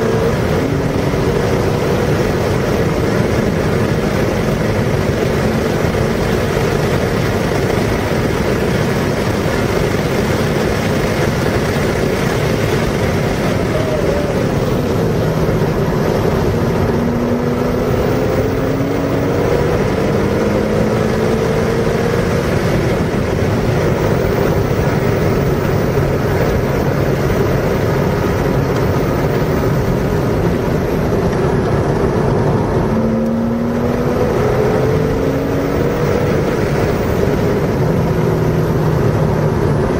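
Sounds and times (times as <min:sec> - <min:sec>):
car engine revving: 0:00.0 - 0:39.9
wind and road noise: 0:00.0 - 0:39.9.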